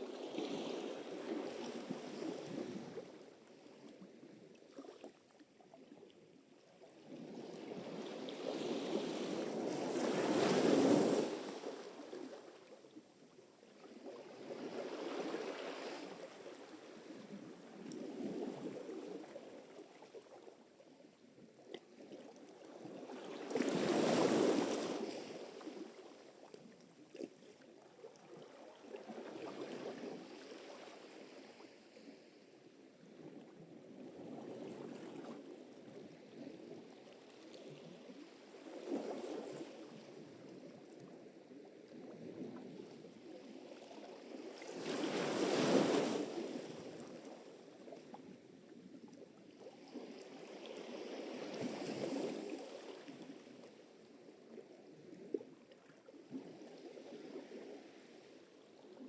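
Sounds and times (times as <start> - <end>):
waves breaking on shore: 44.7 - 46.8.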